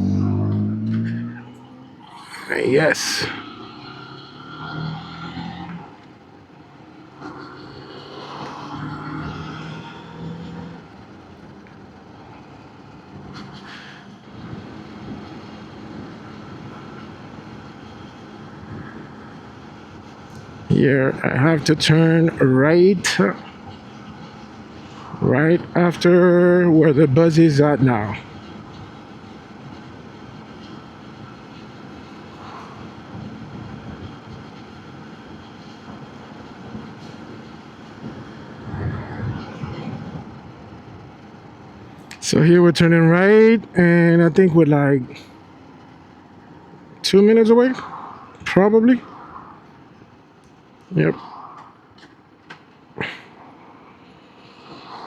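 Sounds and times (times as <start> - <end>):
motorcycle engine hum: 0.0 - 20.7
road noise: 0.0 - 55.0
steady rush of noise: 0.0 - 55.0
wind: 0.0 - 55.0.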